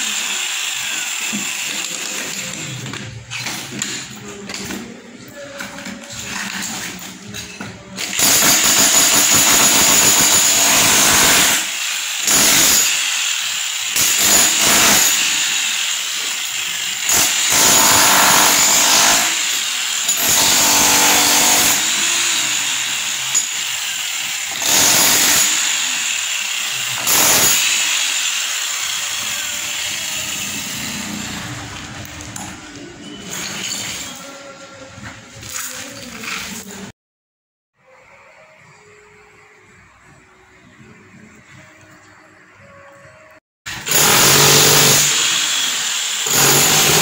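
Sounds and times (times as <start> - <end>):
power tool grinding: 0.0 - 4.1, 8.1 - 32.4, 43.7 - 47.0.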